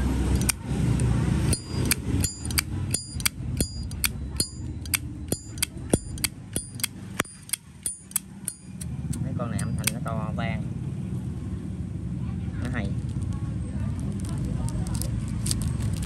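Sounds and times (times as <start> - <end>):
lighter lids clicking open and shut: 1.6 - 8.9, 9.6 - 10.0.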